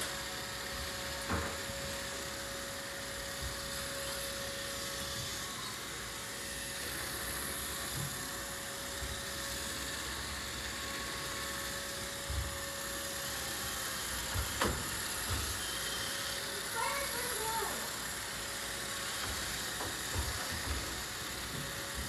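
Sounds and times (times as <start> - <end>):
robot vacuum whirring: 0.0 - 22.0.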